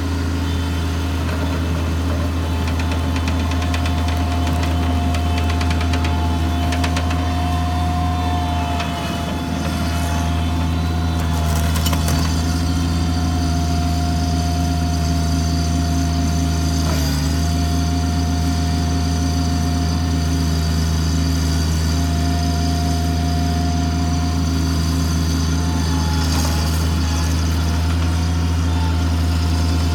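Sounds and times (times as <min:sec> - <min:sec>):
steady whine: 0:00.0 - 0:16.6
track loader engine running: 0:00.0 - 0:29.9.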